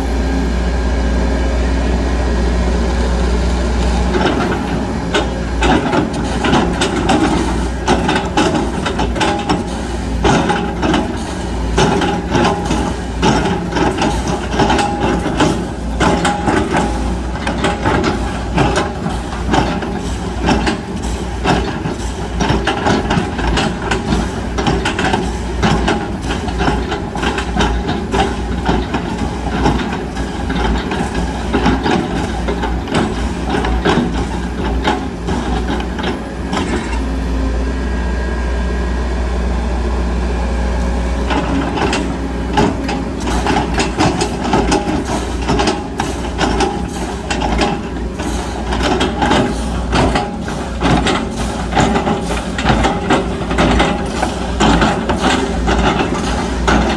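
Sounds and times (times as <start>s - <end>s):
excavator diesel engine drone: 0.0s - 56.9s
clattering knocks: 41.3s - 56.9s.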